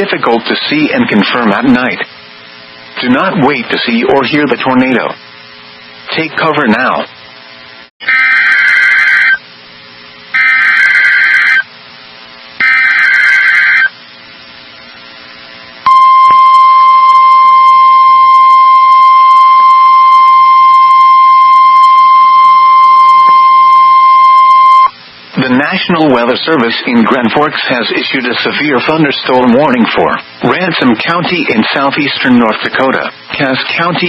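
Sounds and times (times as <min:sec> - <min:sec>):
loud steady alarm tone: 0:08.0 - 0:09.4, 0:10.3 - 0:11.7, 0:12.6 - 0:14.0, 0:15.9 - 0:24.9
buzzy warbling data bursts: 0:10.4 - 0:11.6, 0:12.6 - 0:13.9.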